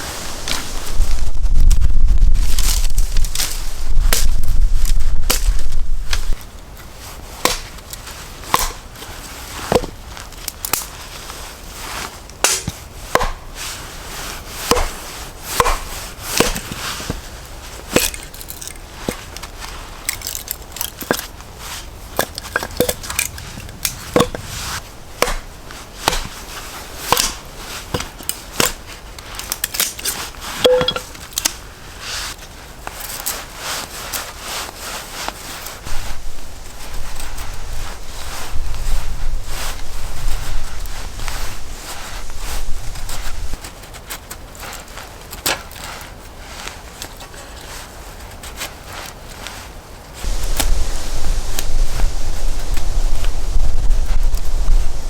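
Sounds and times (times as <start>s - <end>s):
firewood being chopped: 3.2s - 6.4s, 7.4s - 7.8s, 8.5s - 8.8s, 9.7s - 10.0s, 12.4s - 13.6s, 14.6s - 17.2s, 17.9s - 19.2s, 22.1s - 24.5s, 25.2s - 28.8s, 29.4s - 31.6s.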